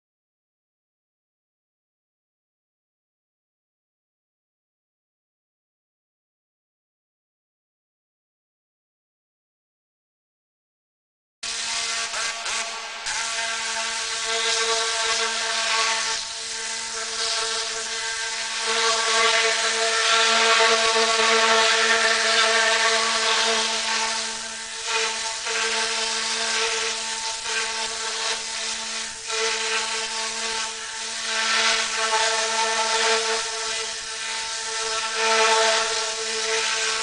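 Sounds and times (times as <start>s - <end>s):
pneumatic cleaning gun whirring: 11.5s - 36.9s.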